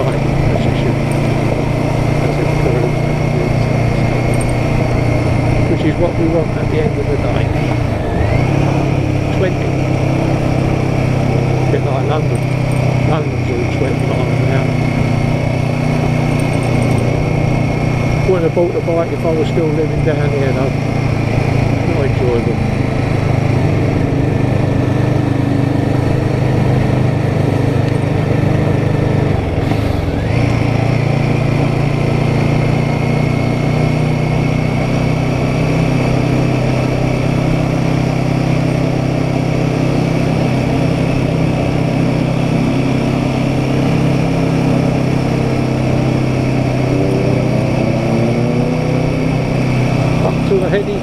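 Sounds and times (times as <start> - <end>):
motorcycle engine running: 0.0 - 51.0.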